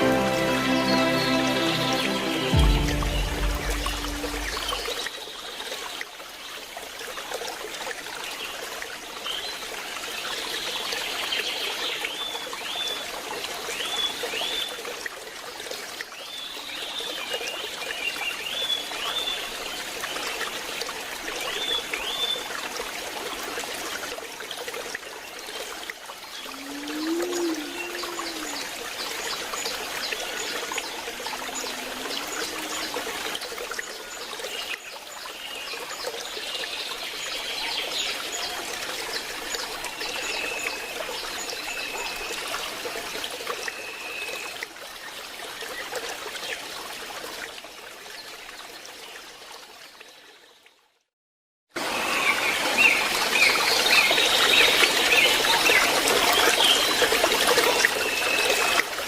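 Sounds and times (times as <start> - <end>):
short high repeated notes: 0.0 - 4.9
waterfall rushing: 0.0 - 5.1, 26.4 - 33.8.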